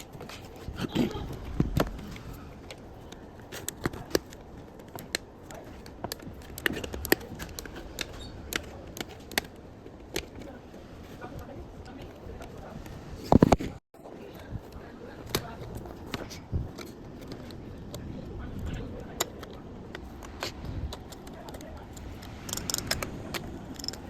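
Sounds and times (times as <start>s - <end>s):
plastic and metal parts clicking: 1.6s - 10.5s, 15.2s - 24.0s.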